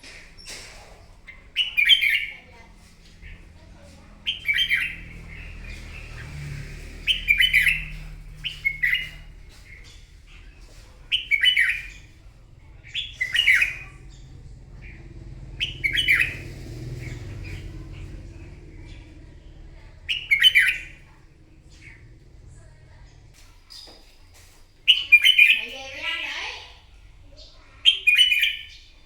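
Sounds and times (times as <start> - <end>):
low steady hum: 0.0 - 23.6
bulbul warbling song: 11.1 - 19.2, 19.8 - 21.2.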